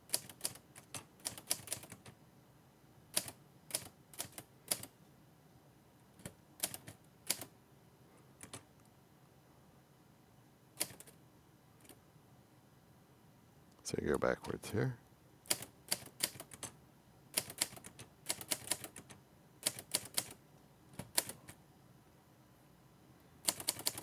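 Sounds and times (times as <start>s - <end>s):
typewriter key clacks: 10.8s - 11.1s, 17.4s - 20.3s, 21.0s - 21.6s, 23.5s - 24.0s.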